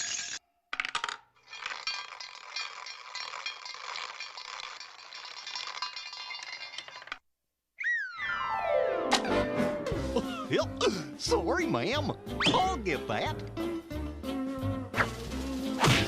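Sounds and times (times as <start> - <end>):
metallic clinking and jingling: 1.4 - 7.2.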